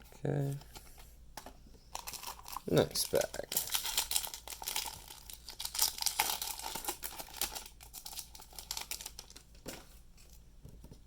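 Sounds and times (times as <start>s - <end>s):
foil wrapper crinkling: 2.0s - 9.8s.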